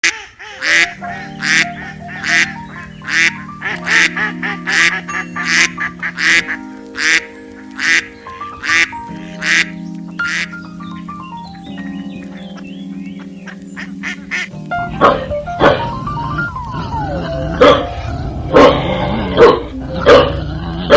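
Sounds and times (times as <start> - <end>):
duck quacks: 0.0 - 10.5, 13.8 - 16.4
music with held chords: 0.6 - 20.9.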